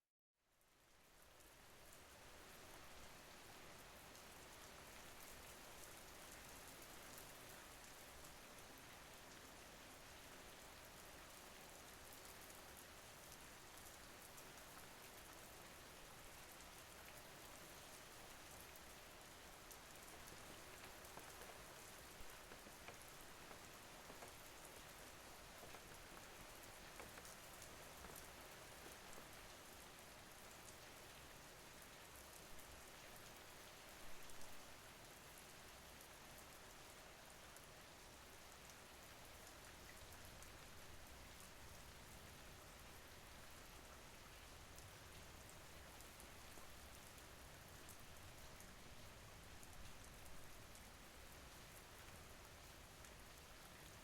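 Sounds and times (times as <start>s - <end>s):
faint steady rain: 0.4s - 54.0s.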